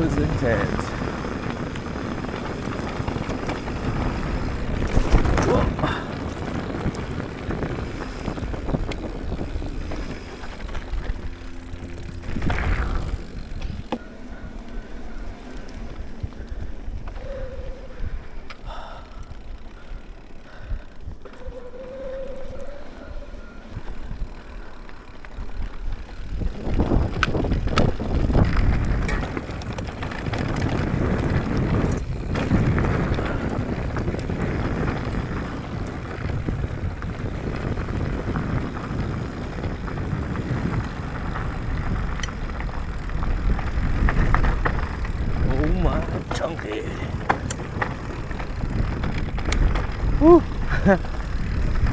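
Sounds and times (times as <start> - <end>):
wind on microphone: 0.0 - 11.3, 16.1 - 19.2, 25.4 - 51.9
tyres rumbling over rocks: 0.0 - 17.4, 23.6 - 51.9
bike rattling and clattering: 0.0 - 51.9.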